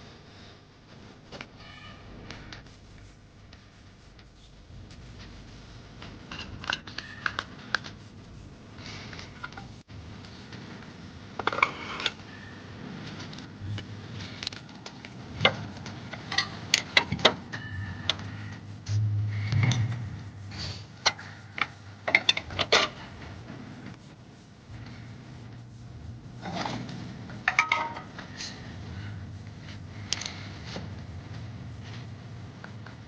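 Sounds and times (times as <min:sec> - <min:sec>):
low hum: 0:13.4 - 0:14.5, 0:17.4 - 0:22.1
clicks and knocks of metal tools: 0:27.5 - 0:28.5.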